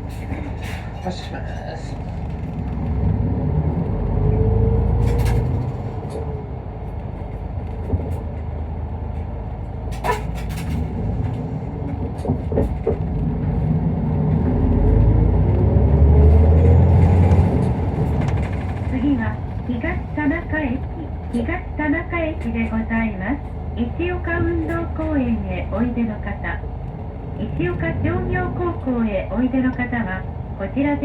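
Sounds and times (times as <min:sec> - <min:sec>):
bus diesel engine revving: 0:00.0 - 0:07.6, 0:09.6 - 0:31.0
rattling clicks in cabin: 0:04.9 - 0:06.3, 0:06.9 - 0:15.7, 0:16.6 - 0:23.6, 0:24.2 - 0:26.0.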